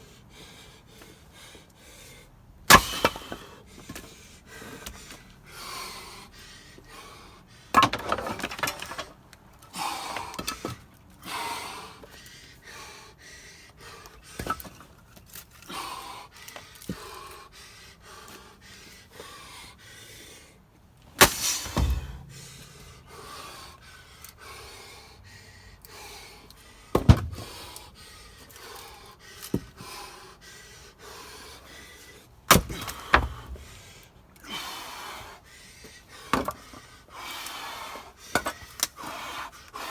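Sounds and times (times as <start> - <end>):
axe striking wood: 2.7 - 3.4, 21.2 - 23.4, 32.5 - 33.4
heavy breathing: 15.5 - 38.2.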